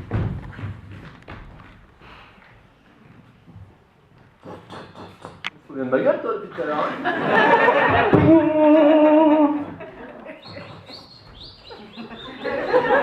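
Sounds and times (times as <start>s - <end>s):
man making high squeaks: 10.4s - 12.4s.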